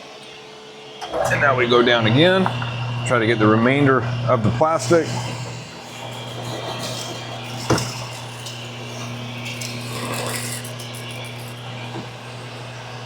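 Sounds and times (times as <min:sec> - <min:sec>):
drill press motor hum: 0:01.0 - 0:13.0
drill bit scraping plastic: 0:04.4 - 0:13.0.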